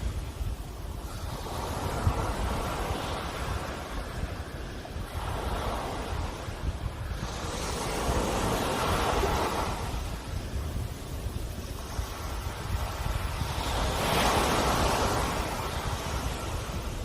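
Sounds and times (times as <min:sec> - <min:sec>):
sea waves washing ashore: 0:00.0 - 0:17.0.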